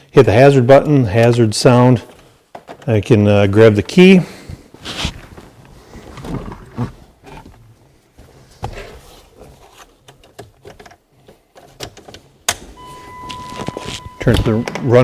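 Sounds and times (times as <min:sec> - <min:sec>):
electronic warning tone: 0:12.8 - 0:14.9.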